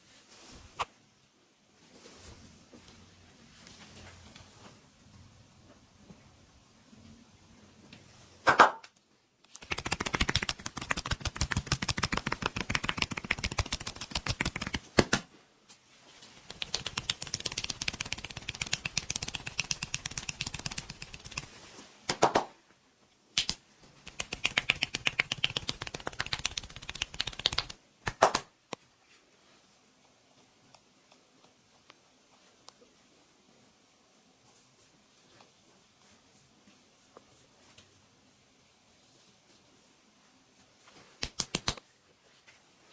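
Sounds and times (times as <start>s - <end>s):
hands slapping and tapping body: 9.5s - 15.3s, 16.4s - 21.5s, 22.1s - 22.5s, 23.4s - 28.8s, 41.0s - 41.9s
sharp hand smacks: 23.4s - 28.5s, 41.2s - 41.8s.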